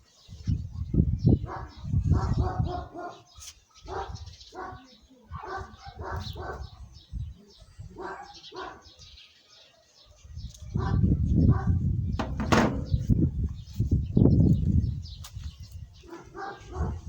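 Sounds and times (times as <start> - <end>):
dog barking: 1.4 - 6.9, 8.0 - 11.8, 16.0 - 17.0.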